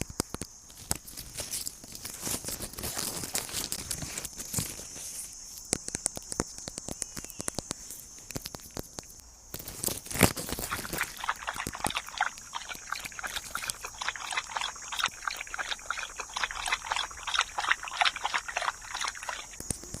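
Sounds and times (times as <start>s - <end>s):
fingertip tapping and clicks: 5.7s - 9.1s.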